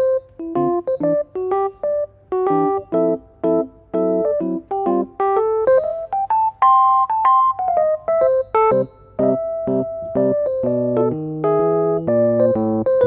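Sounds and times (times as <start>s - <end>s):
piano-like keyboard music: 0.0s - 13.0s.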